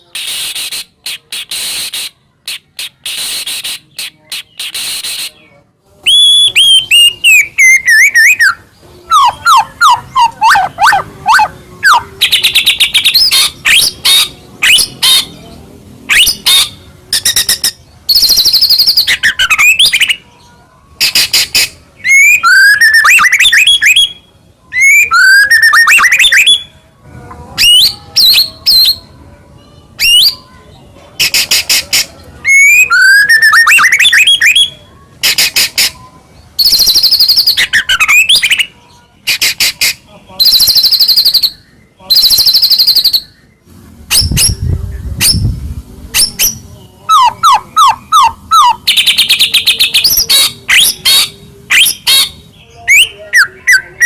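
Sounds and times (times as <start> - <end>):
songbird singing: 0.0 - 54.0.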